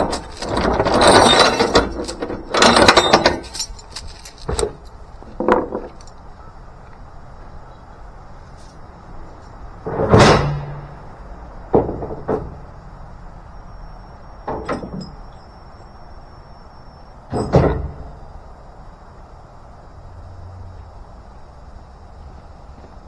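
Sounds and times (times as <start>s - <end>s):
heavy bangs and clanks: 0.0s - 4.8s, 9.8s - 12.8s
steady background hiss: 0.0s - 23.0s.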